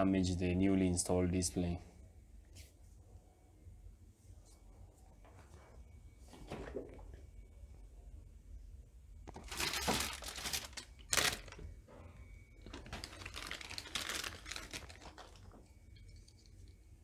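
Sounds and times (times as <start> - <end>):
crinkling and rustling: 9.2 - 17.0.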